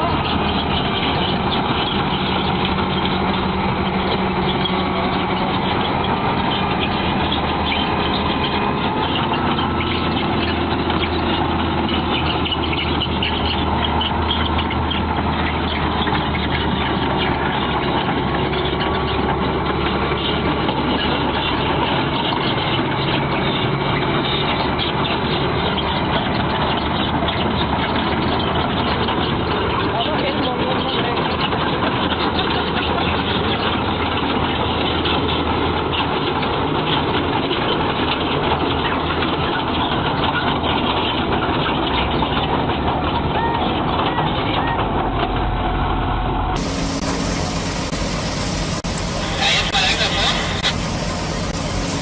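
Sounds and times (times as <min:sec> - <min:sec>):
heavy machine engine running: 0:00.0 - 0:52.0.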